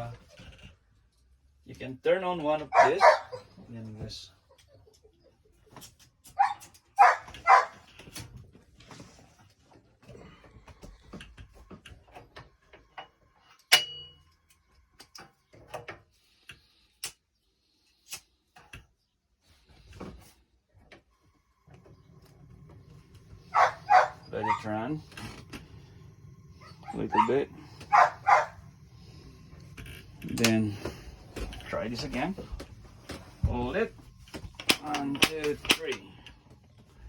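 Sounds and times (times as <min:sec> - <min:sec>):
dog barking: 0:02.7 - 0:03.5, 0:06.4 - 0:07.8, 0:23.5 - 0:24.7, 0:26.6 - 0:28.6.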